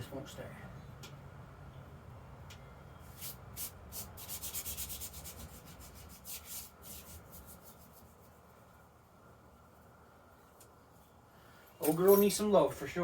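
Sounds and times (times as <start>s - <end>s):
low steady hum: 0.0s - 13.0s
rubbing strokes: 3.1s - 8.8s.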